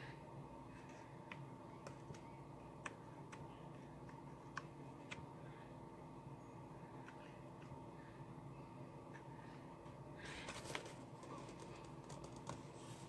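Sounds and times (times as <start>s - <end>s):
paper piercer clicking and tapping: 10.5s - 12.8s.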